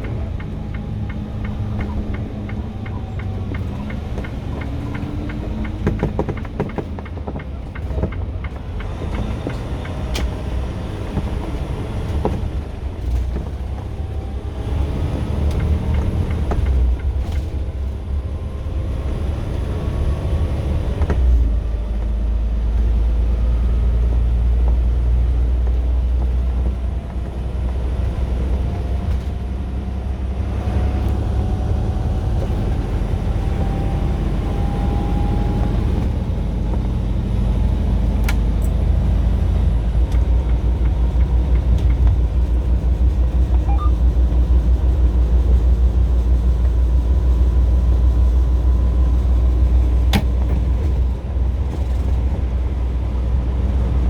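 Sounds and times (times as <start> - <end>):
engine rumbling: 0.0 - 54.0.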